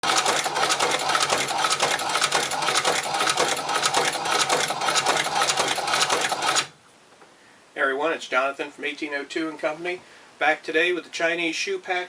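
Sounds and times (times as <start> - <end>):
sewing machine clattering: 0.0 - 6.7.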